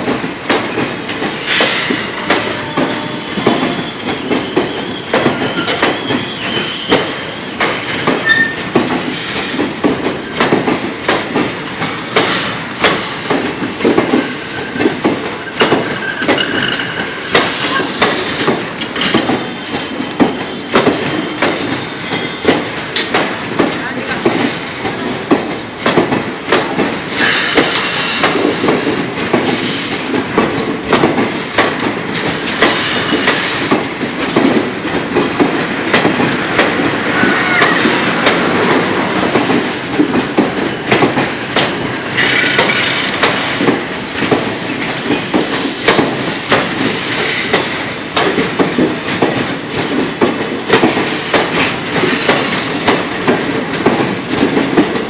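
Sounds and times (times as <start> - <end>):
train wheels clattering over rails: 0.0 - 55.0
high-pitched wheel squeals: 8.2 - 8.6.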